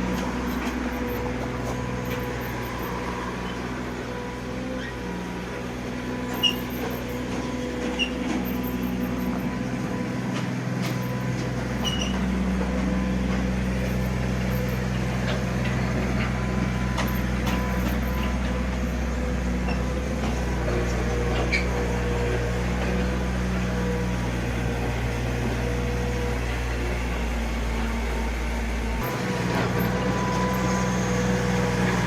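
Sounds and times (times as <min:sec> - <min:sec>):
excavator diesel engine drone: 0:00.0 - 0:32.0.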